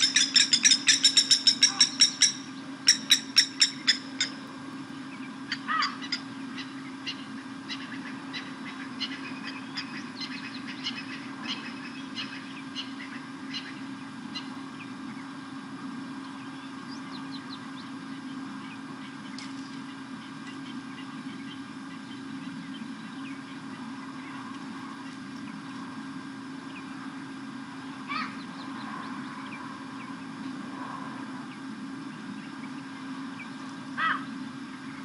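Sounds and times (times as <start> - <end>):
lapwings alarm calls: 0.0 - 4.4, 5.5 - 14.6, 28.1 - 28.4, 34.0 - 34.3
steady low hum: 0.0 - 35.0.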